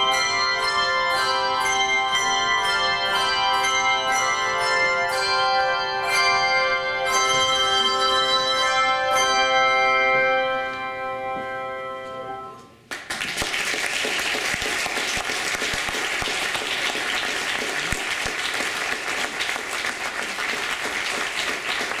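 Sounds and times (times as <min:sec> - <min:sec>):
handbell choir chord: 0:00.0 - 0:12.6
audience applause: 0:12.9 - 0:22.0.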